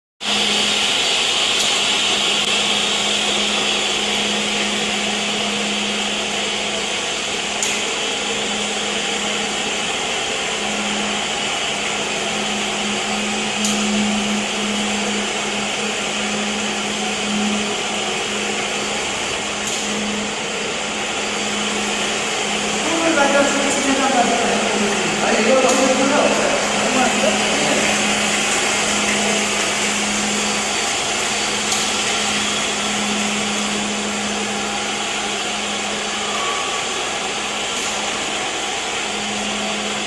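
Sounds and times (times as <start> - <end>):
floor scrubber running: 0.2 - 40.0.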